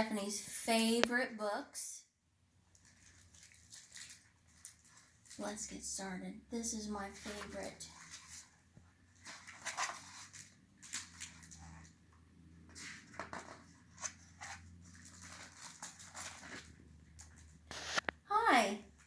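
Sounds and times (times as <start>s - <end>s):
book pages turning: 7.0s - 18.2s.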